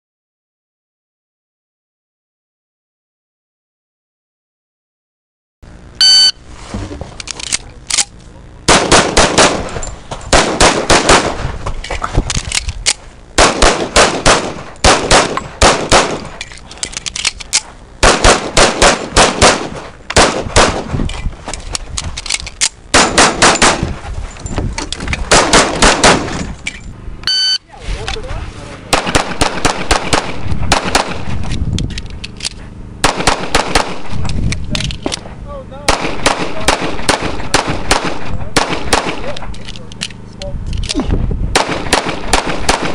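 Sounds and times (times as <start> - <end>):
shot timer beep: 6.0 - 6.4, 27.2 - 27.6
pistol shots: 8.7 - 11.5, 13.4 - 16.4, 18.0 - 20.9, 22.9 - 24.0, 25.3 - 26.4, 28.9 - 31.3, 33.0 - 34.2, 35.8 - 39.4, 41.6 - 42.9.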